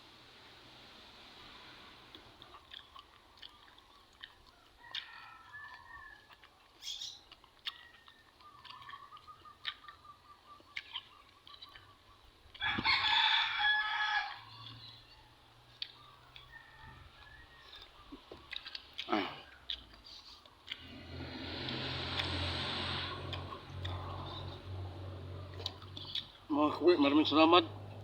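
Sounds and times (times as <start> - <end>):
rooster crowing: 4.8 - 6.4, 12.6 - 15.3, 16.4 - 17.9.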